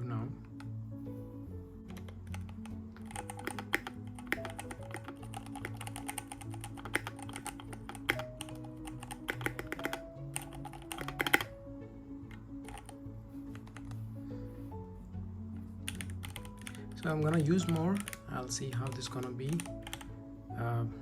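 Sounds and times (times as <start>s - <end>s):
background music: 0.0s - 21.0s
mechanical keyboard typing: 1.9s - 11.5s, 12.3s - 14.0s, 15.8s - 20.1s.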